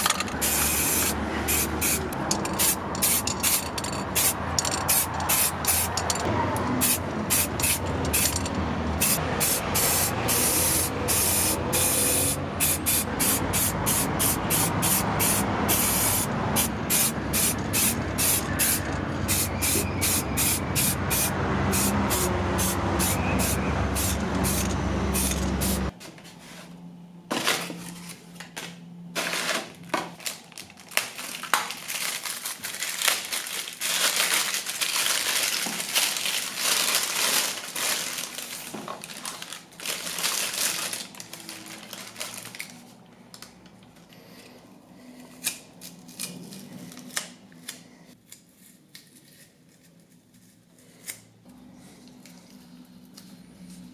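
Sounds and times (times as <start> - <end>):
paint sprayer hissing: 0.0 - 6.0, 6.8 - 8.4, 9.0 - 25.9
air compressor humming: 0.0 - 26.0.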